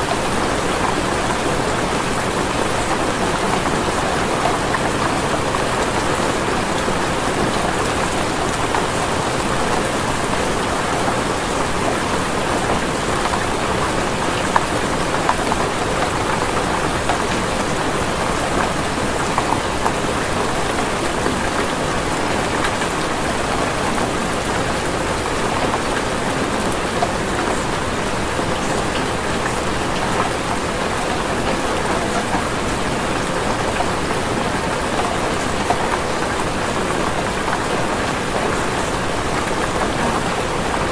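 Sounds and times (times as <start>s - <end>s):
steady rain patter: 0.0s - 40.9s.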